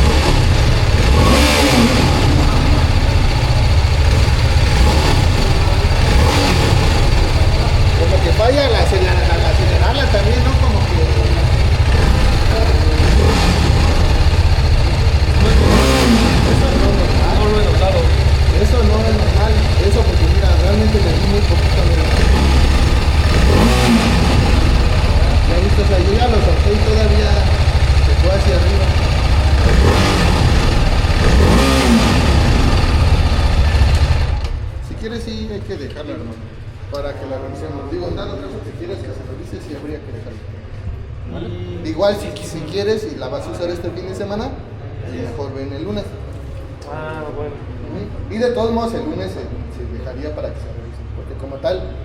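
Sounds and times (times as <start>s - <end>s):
motorcycle engine running: 0.0s - 35.7s
abnormal mechanical engine noise: 0.0s - 45.0s.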